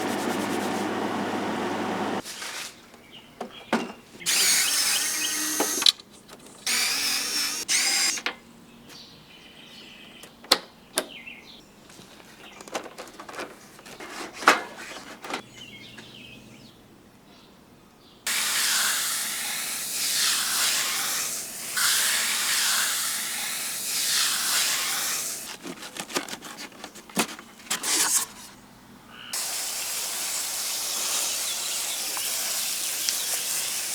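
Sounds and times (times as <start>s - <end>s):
power tool running: 0.0s - 2.2s, 4.3s - 5.9s, 6.7s - 8.2s, 18.3s - 25.6s, 29.4s - 33.9s
steady hissing: 18.3s - 25.6s, 29.4s - 33.9s.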